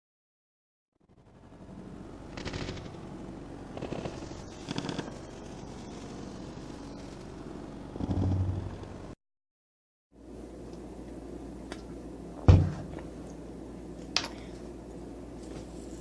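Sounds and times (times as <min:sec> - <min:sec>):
steady low hum: 0:01.0 - 0:09.2, 0:10.2 - 0:16.0
fast mechanical rattle: 0:02.3 - 0:03.1.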